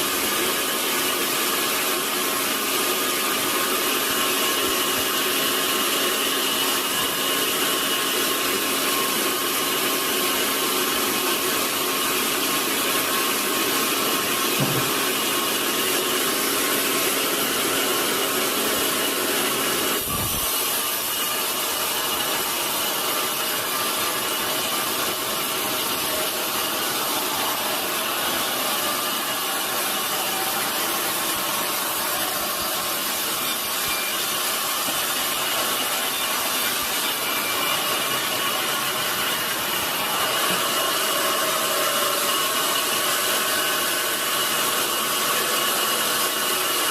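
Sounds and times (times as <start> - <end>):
sawmill saw cutting log: 0.0 - 46.9.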